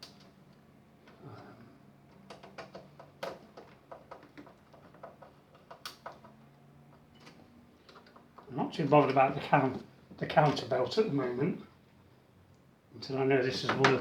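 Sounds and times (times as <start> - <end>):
small parts and tools clicking: 2.1 - 8.5.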